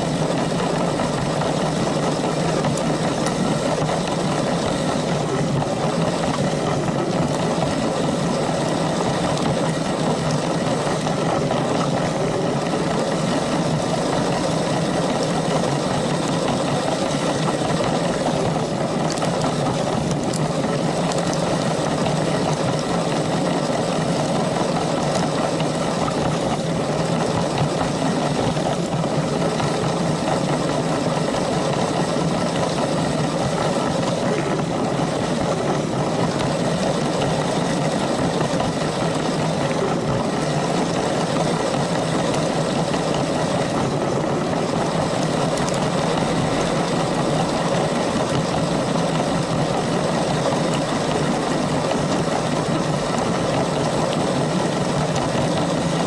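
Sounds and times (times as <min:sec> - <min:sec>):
toy train electric motor: 0:00.0 - 0:56.0.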